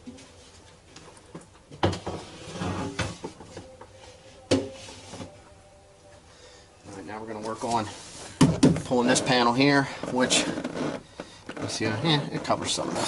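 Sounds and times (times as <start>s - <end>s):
clattering and rubbing: 1.8s - 5.4s, 7.6s - 13.0s.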